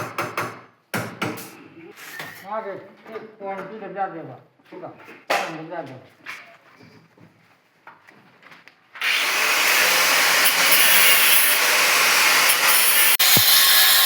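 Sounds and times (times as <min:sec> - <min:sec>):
power tool grinding: 0:09.0 - 0:14.0.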